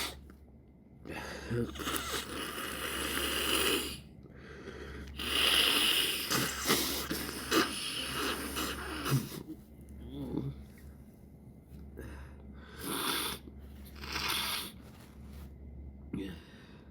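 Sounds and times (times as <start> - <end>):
wet sniffling through congested nose: 0.0 - 0.2, 1.7 - 4.0, 5.0 - 9.6, 12.8 - 15.0.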